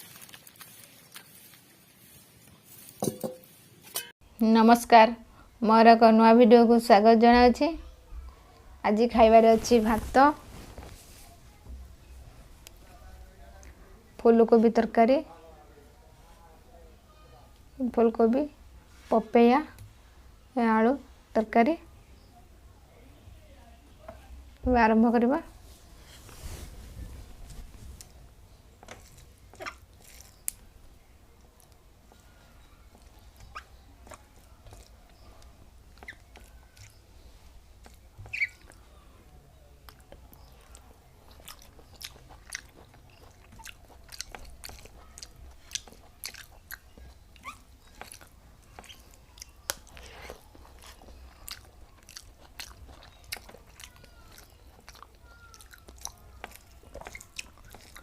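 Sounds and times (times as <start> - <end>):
chewing and biting food: 0.0 - 1.9, 28.8 - 30.6, 32.9 - 37.0, 39.9 - 58.0
mouth clicks and smacks: 28.8 - 30.6, 39.9 - 58.0.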